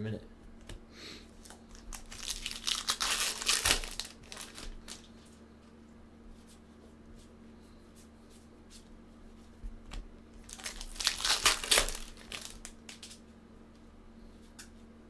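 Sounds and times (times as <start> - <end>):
wrapper tearing and crinkling: 1.4 - 5.2, 10.4 - 13.2.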